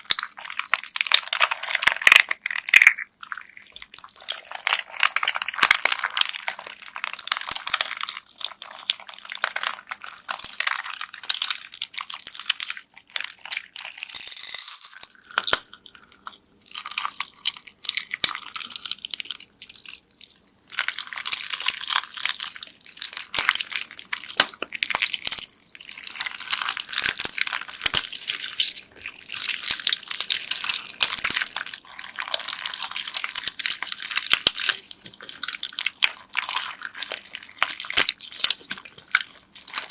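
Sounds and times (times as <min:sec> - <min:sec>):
bead slime crackling and popping: 0:15.3 - 0:39.9.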